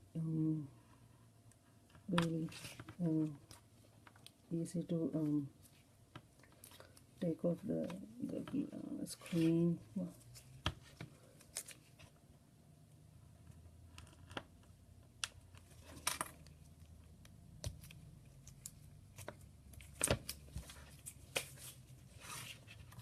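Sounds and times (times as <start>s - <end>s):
low steady hum: 0.0s - 23.0s
tape clicks and crinkles: 10.3s - 12.1s, 13.9s - 23.0s.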